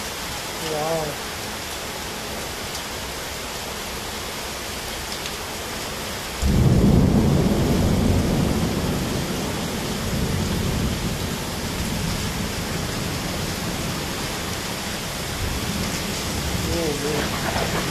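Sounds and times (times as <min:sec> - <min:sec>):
steady rain hiss: 0:00.0 - 0:17.9
thunderclap rumbling: 0:06.4 - 0:14.0, 0:15.4 - 0:17.9.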